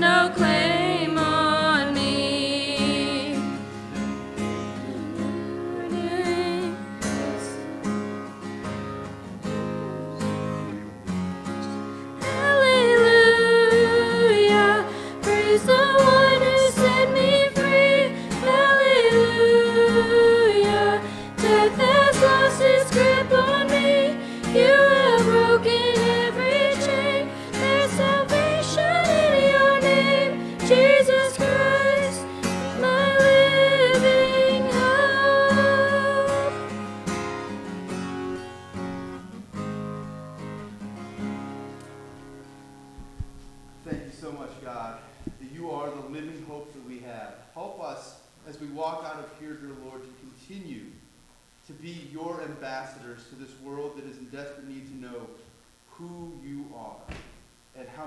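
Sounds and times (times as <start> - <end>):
person singing: 0.0 - 3.6, 4.7 - 8.1, 12.2 - 36.8
acoustic guitar: 0.0 - 47.6.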